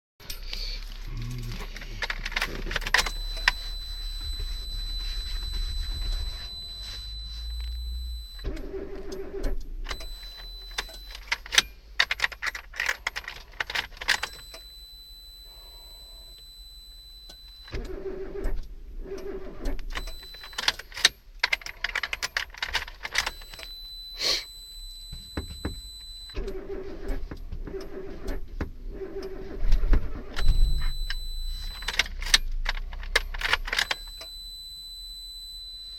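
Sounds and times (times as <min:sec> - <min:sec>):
keys jangling in ignition: 0:00.2 - 0:07.0
high-pitched electronic tone: 0:00.2 - 0:11.7, 0:13.9 - 0:17.8, 0:23.0 - 0:26.5, 0:30.4 - 0:32.6
car starter cranking: 0:00.2 - 0:16.4, 0:17.2 - 0:34.4.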